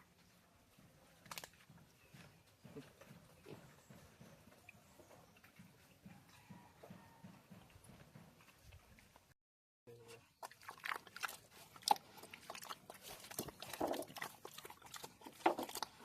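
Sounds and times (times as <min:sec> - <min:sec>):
pigs crunching feed: 0:10.2 - 0:16.0.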